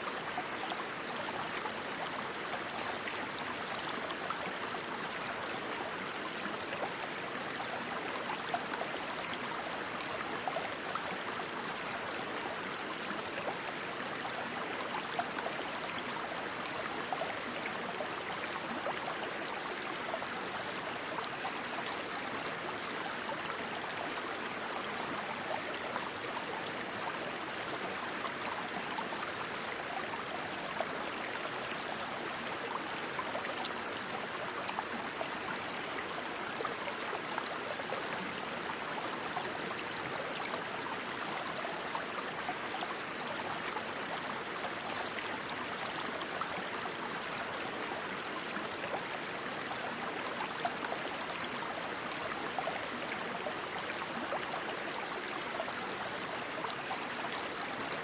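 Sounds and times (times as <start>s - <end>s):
stream water rushing: 0.0s - 58.0s.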